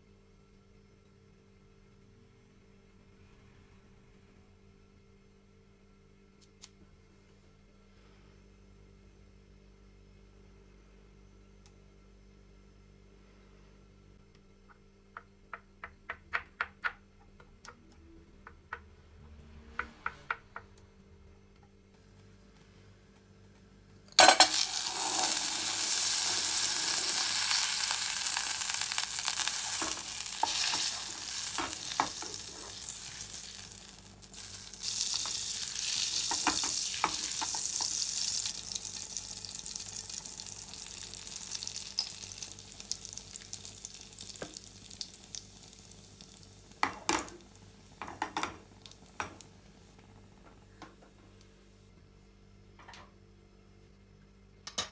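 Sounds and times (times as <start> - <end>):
food sizzling in butter: 24.2 - 49.5.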